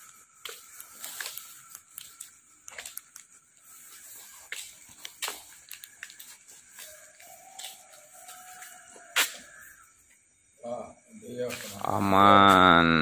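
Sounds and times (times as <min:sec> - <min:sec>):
footsteps and phone handling clicks: 0:00.0 - 0:09.4.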